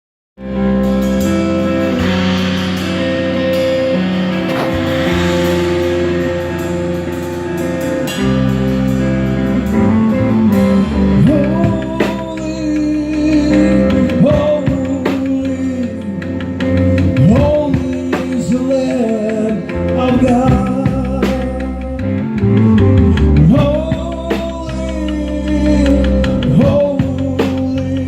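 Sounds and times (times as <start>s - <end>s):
band playing: 0.4s - 28.0s
person singing: 9.7s - 28.0s.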